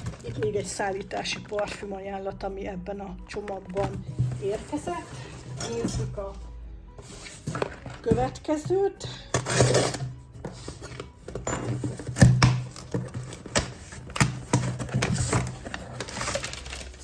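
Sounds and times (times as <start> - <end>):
packaging rustling: 0.0 - 0.8, 7.2 - 8.3, 9.3 - 17.0.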